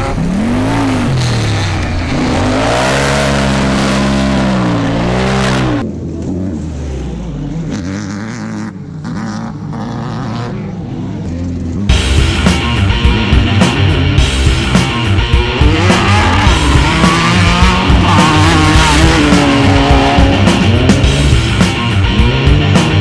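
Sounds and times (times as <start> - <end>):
race car engine revving: 0.0 - 5.8, 13.4 - 22.9
rock music with steady beat: 11.9 - 23.0.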